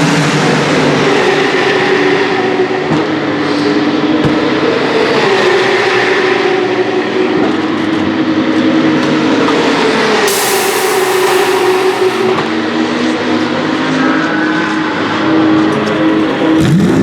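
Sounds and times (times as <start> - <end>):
racing car engines: 0.0 - 17.0
bright hiss: 10.3 - 12.5.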